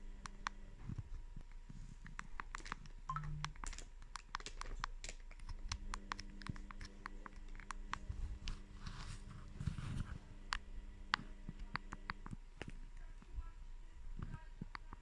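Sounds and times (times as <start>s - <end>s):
phone keypad buttons clicking: 2.2s - 8.1s.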